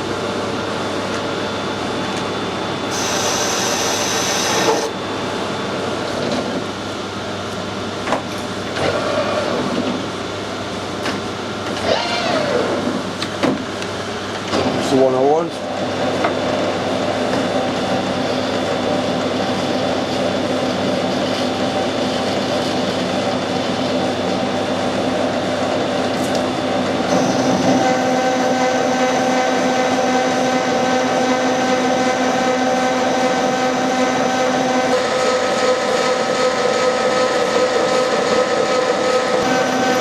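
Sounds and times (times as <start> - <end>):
metal lathe running: 2.4 - 5.3, 27.0 - 40.0.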